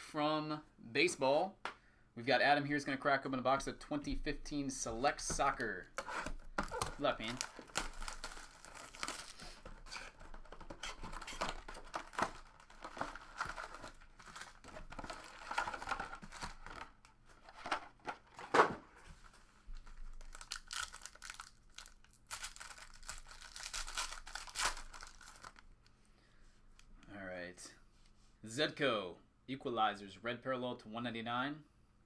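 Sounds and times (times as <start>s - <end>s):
plastic wrapper crinkling and ripping: 6.5s - 18.5s, 19.3s - 25.7s.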